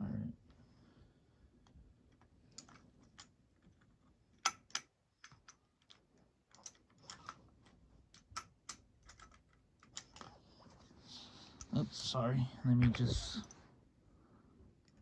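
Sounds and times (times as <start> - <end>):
metal parts clicking and tapping: 1.6 - 10.3.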